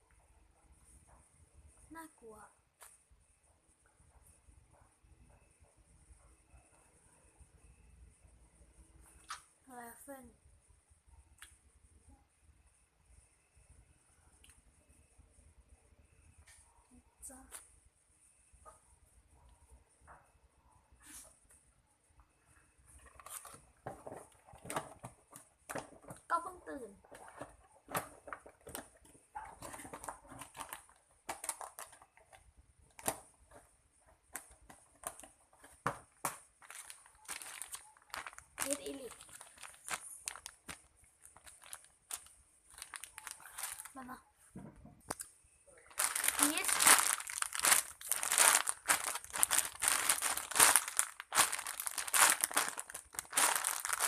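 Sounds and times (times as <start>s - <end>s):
foam toy squeezed crackling: 36.2s - 44.0s, 45.9s - 54.0s.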